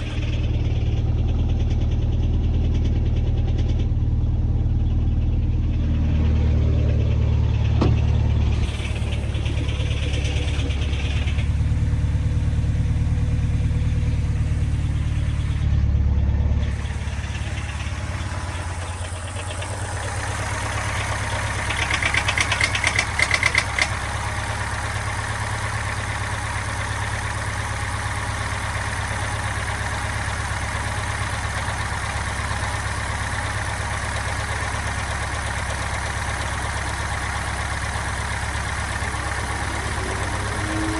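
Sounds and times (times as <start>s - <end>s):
car engine idling with knock: 0.0s - 40.9s
short rattle: 7.5s - 11.8s.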